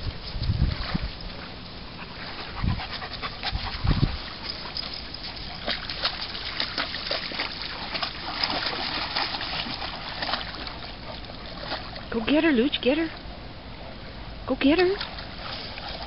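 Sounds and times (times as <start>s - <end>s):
dog splashing in water: 3.0s - 12.4s, 15.0s - 16.0s.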